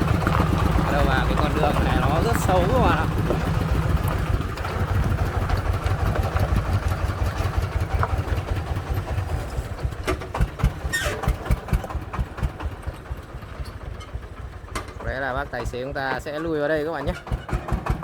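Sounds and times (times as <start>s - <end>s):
diesel engine chugging: 0.0s - 18.0s
truck rattling over rough ground: 0.0s - 18.0s.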